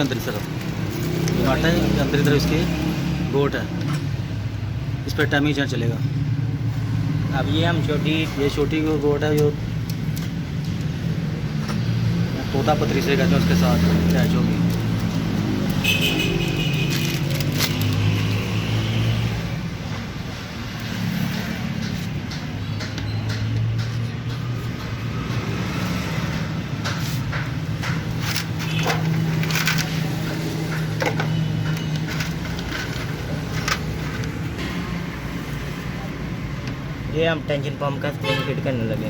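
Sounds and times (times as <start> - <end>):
road traffic hum: 0.0 - 39.0
metallic clicks of hand tools: 9.2 - 11.0.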